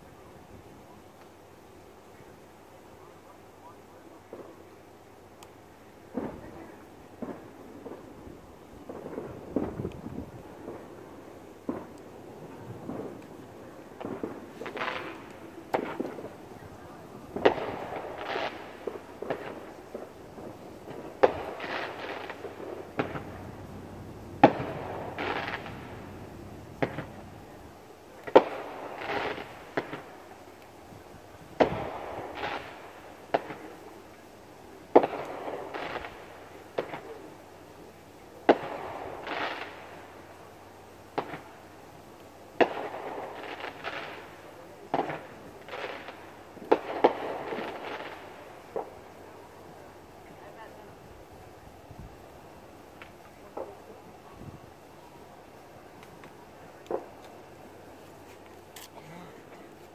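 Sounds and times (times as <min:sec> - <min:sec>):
fireworks bangs: 0:06.1 - 0:30.6, 0:31.4 - 0:33.9, 0:34.9 - 0:37.3, 0:38.4 - 0:40.3, 0:42.6 - 0:50.8.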